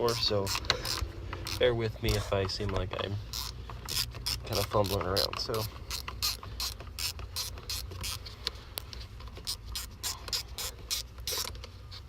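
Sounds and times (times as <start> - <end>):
screwdriver clicking and scraping: 0.0 - 12.0.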